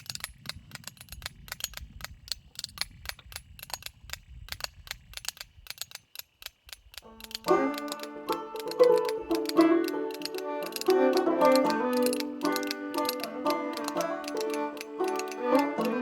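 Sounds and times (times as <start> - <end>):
fiddle: 7.0 - 16.0
banjo: 7.1 - 16.0
metal spoons clacking: 7.2 - 16.0.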